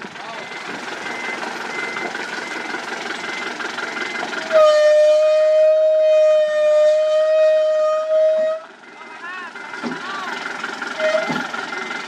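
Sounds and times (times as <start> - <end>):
road-paving machinery running: 0.0 - 12.0
faint reversing beep: 0.2 - 4.5, 8.6 - 9.8, 11.0 - 12.0
vehicle horn blast: 4.4 - 8.8, 11.0 - 11.5.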